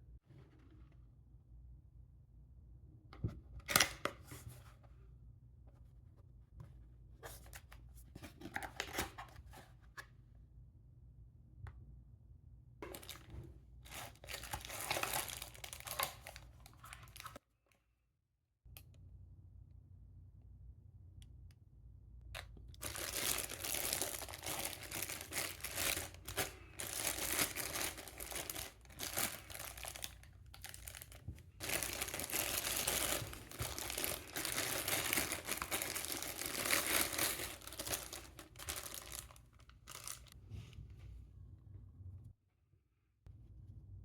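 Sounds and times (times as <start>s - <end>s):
packaging crinkling: 12.8s - 17.4s, 22.8s - 40.4s.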